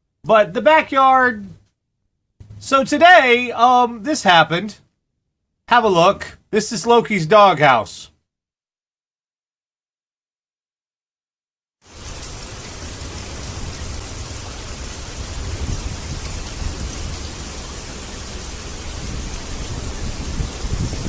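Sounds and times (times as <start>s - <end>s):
steady rain falling: 11.8s - 21.0s.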